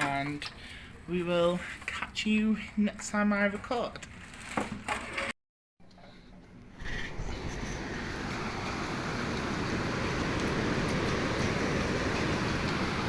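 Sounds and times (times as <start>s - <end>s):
storm wind rushing: 6.8s - 13.0s
water rushing: 7.1s - 13.0s.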